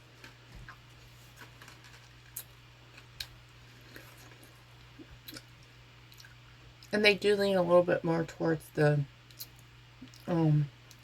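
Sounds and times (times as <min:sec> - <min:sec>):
faint chewing of crunchy cookie: 0:00.0 - 0:07.0, 0:09.2 - 0:11.0
low steady hum: 0:00.0 - 0:11.0.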